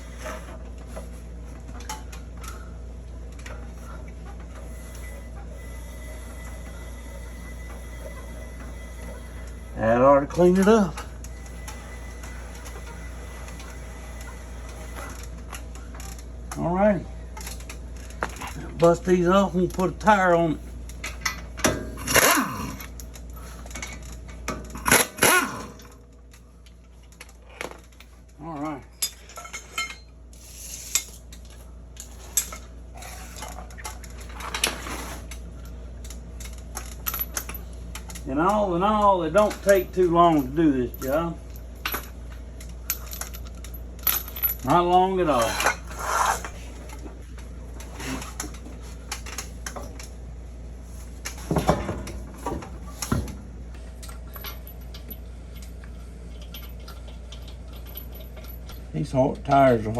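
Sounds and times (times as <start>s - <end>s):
low steady hum: 0.0s - 59.9s
metal parts and tools clinking: 10.2s - 16.7s, 17.4s - 50.2s, 51.0s - 59.9s
scraping and rustling: 32.0s - 35.5s.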